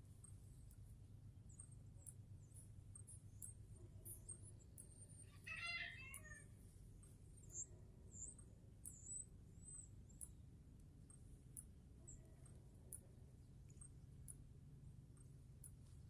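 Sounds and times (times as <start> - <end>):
birds chirping: 1.5 - 6.4.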